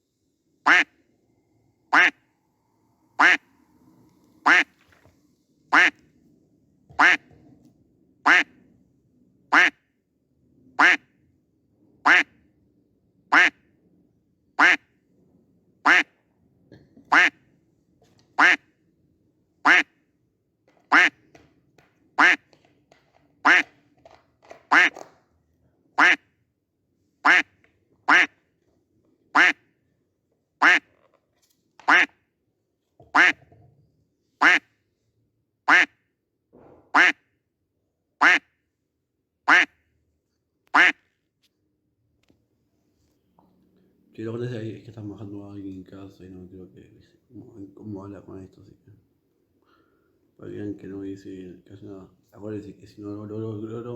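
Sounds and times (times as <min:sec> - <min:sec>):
duck quacking: 0:00.7 - 0:00.9, 0:01.9 - 0:02.2, 0:03.2 - 0:03.4, 0:04.4 - 0:04.7, 0:05.7 - 0:06.0, 0:07.0 - 0:07.2, 0:08.3 - 0:08.5, 0:09.5 - 0:09.8, 0:10.8 - 0:11.0, 0:12.0 - 0:12.3, 0:13.3 - 0:13.6, 0:14.6 - 0:14.8, 0:15.8 - 0:16.1, 0:17.1 - 0:17.4, 0:18.4 - 0:18.6, 0:19.6 - 0:19.9, 0:20.9 - 0:21.2, 0:22.2 - 0:22.4, 0:23.4 - 0:23.7, 0:24.7 - 0:25.0, 0:26.0 - 0:26.2, 0:27.2 - 0:27.5, 0:28.1 - 0:28.3, 0:29.4 - 0:29.6, 0:30.6 - 0:30.8, 0:31.9 - 0:32.1, 0:33.2 - 0:33.4, 0:34.4 - 0:34.7, 0:35.7 - 0:35.9, 0:37.0 - 0:37.2, 0:38.2 - 0:38.4, 0:39.5 - 0:39.7, 0:40.8 - 0:41.0
duck quack sound effect: 0:04.4 - 0:04.7, 0:07.0 - 0:07.2, 0:09.5 - 0:09.8, 0:26.0 - 0:26.2, 0:27.2 - 0:27.5, 0:30.6 - 0:30.8, 0:31.9 - 0:32.1, 0:34.4 - 0:34.6, 0:35.7 - 0:35.9, 0:37.0 - 0:37.2, 0:38.2 - 0:38.4.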